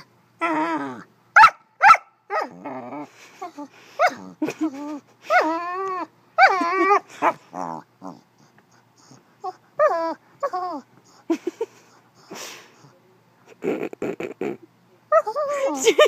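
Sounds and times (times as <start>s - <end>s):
dog whining and moaning: 0.0s - 1.1s, 2.3s - 11.4s, 15.1s - 15.8s.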